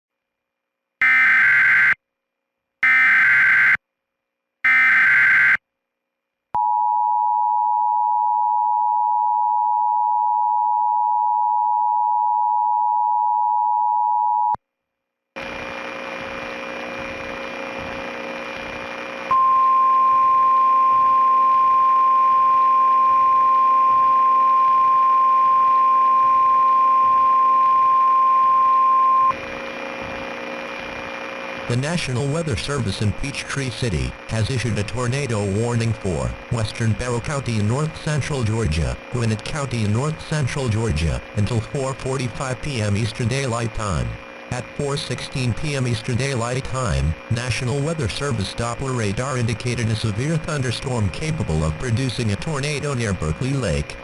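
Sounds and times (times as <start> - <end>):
steady alarm tone: 1.0 - 2.0, 2.8 - 3.8, 4.6 - 5.6, 19.3 - 30.2
two-tone attention signal: 19.3 - 29.3
hissing humming background: 29.4 - 54.0.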